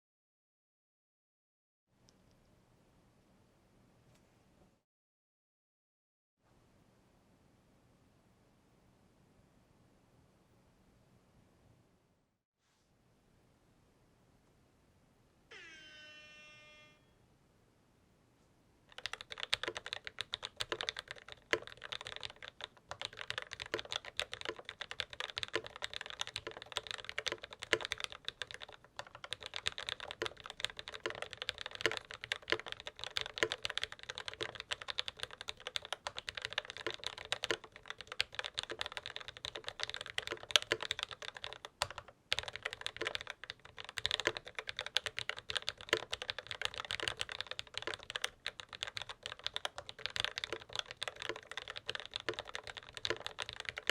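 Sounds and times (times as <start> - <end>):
fast typing on mechanical keyboard: 18.9 - 53.9.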